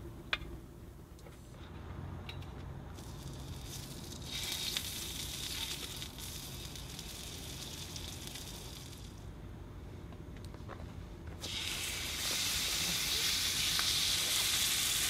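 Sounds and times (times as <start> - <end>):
meat sizzling on hot iron plate: 3.0 - 9.0, 11.4 - 15.0.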